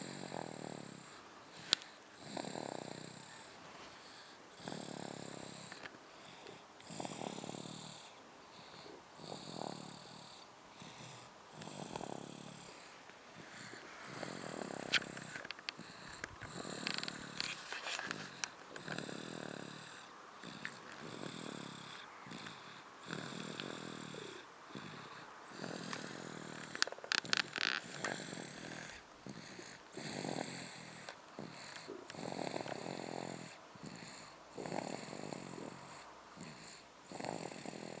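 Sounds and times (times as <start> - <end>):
child snoring: 0.0 - 38.0
sharp clicks: 14.9 - 15.8.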